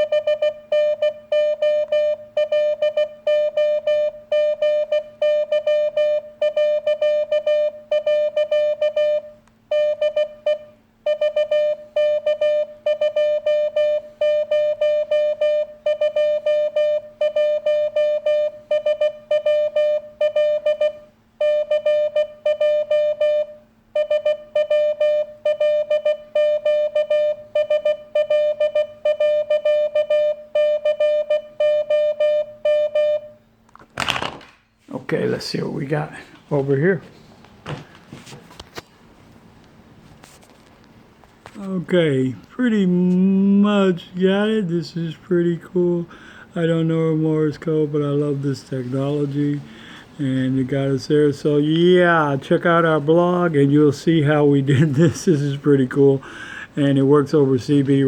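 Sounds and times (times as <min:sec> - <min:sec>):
morse code beeps: 0:00.0 - 0:33.4
low steady hum: 0:00.0 - 0:58.0.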